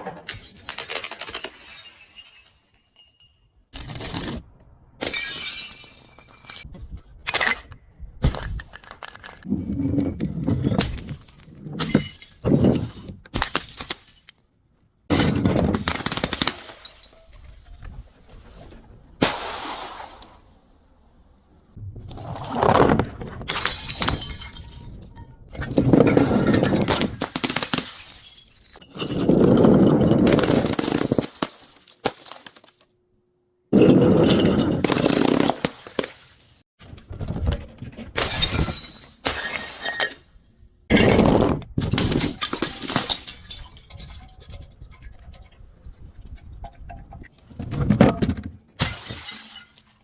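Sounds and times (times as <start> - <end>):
glass crashing: 0.3 - 4.3, 5.0 - 6.6, 23.5 - 25.2, 26.0 - 32.9, 38.2 - 44.3, 48.8 - 50.0
glass crunching and shattering: 0.3 - 4.4, 5.0 - 6.7, 10.5 - 14.5, 23.5 - 32.9, 38.2 - 45.5, 48.8 - 50.0.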